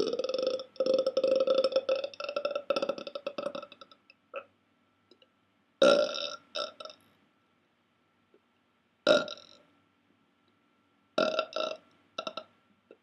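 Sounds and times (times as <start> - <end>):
man belching: 0.0 - 4.5, 11.2 - 12.4.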